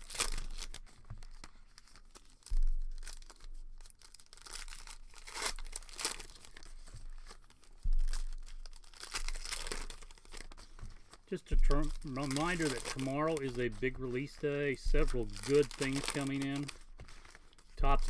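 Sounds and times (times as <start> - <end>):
foil wrappers tearing and crinkling: 0.0 - 18.0
dull thumps: 5.6 - 18.0.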